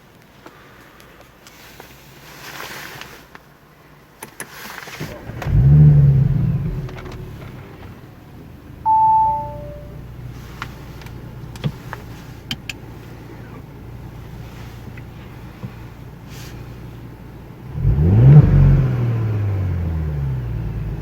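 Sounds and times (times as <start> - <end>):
car engine idling: 5.1 - 17.9
two-note electronic chime: 8.9 - 10.0.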